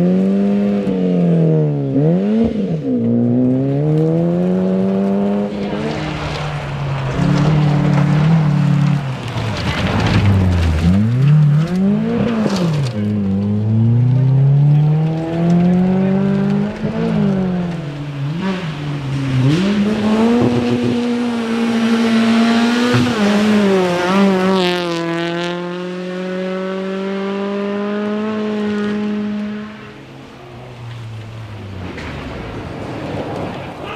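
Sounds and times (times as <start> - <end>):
rally car engine revving: 0.0 - 33.9.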